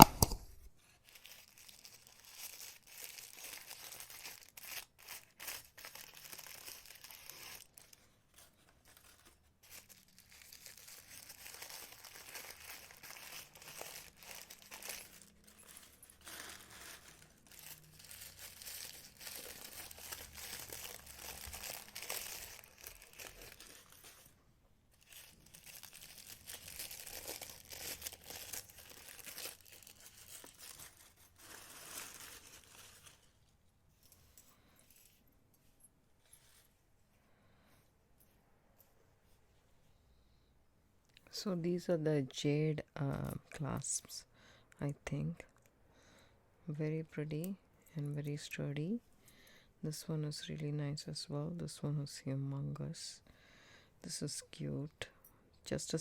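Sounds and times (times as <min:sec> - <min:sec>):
plastic packaging crinkling: 0:00.0 - 0:33.6.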